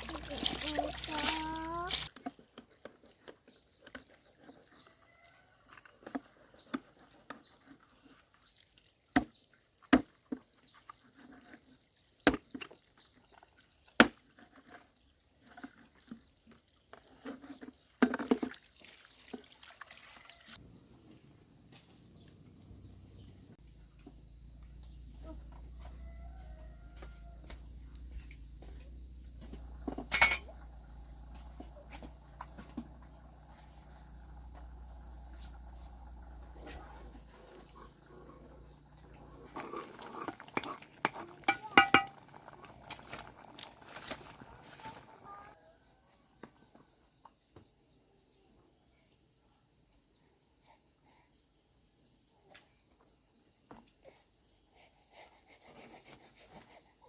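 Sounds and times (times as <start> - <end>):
high insect drone: 0.0 - 2.1, 20.6 - 45.7
knocks and clatters of handwork: 29.5 - 30.6, 40.4 - 42.2.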